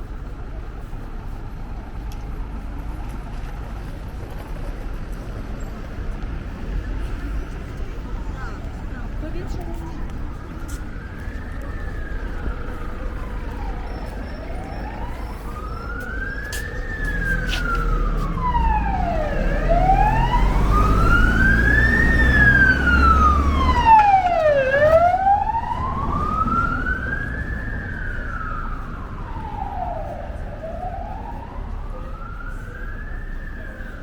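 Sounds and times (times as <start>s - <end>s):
vehicle engine rumble: 0.0s - 34.0s
wailing siren: 7.5s - 34.0s.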